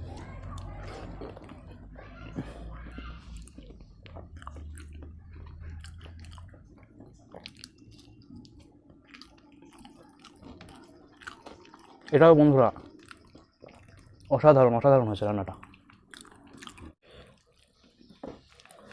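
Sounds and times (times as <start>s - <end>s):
person chewing: 0.0s - 14.4s, 15.5s - 18.9s
wet mouth clicks and smacks: 3.3s - 12.2s.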